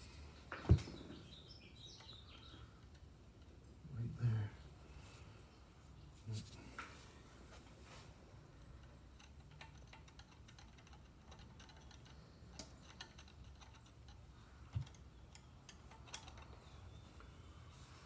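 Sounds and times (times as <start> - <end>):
clicks of tools and metal parts: 8.6 - 16.6.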